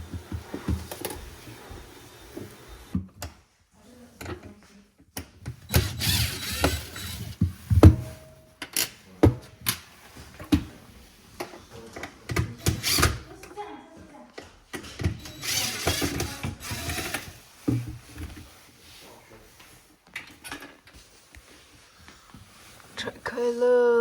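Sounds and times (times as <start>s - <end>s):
tools and panels clicking and thudding: 14.7s - 17.9s.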